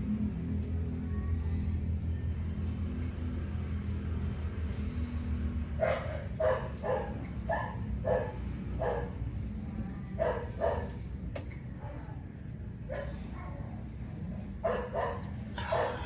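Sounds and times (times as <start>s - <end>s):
dog barking: 5.8s - 9.2s, 9.8s - 11.0s, 12.9s - 13.6s, 14.6s - 16.0s.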